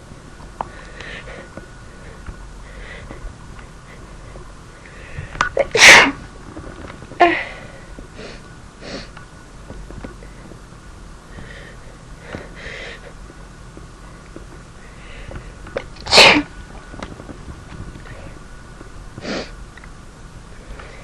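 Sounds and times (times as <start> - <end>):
catching breaths: 0.6 - 3.2, 11.3 - 13.2
soft breathing: 0.6 - 5.4, 11.3 - 13.2, 14.8 - 15.6
person sneezing: 5.6 - 6.2, 16.1 - 16.5.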